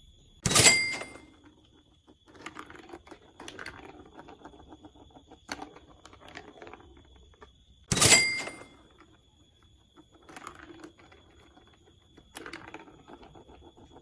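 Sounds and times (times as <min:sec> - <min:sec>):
short ringing tone: 0:00.0 - 0:01.4, 0:07.2 - 0:10.6
marbles rolling on plastic track: 0:00.5 - 0:14.0.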